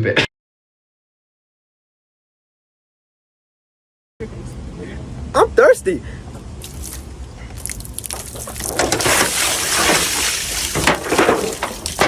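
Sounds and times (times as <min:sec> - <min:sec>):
running water splashing: 0:06.6 - 0:12.0
clicks and knocks: 0:10.8 - 0:12.0.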